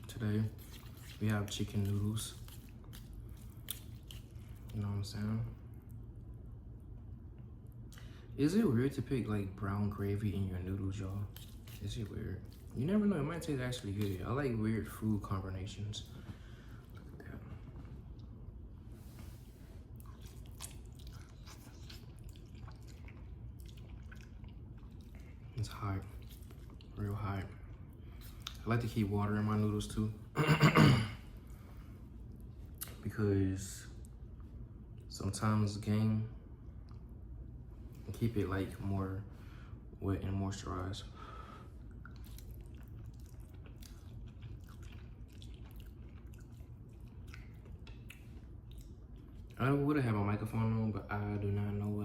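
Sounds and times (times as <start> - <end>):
wet chewing noodles: 0.0 - 8.1, 10.0 - 15.0, 15.6 - 29.7, 41.2 - 49.8.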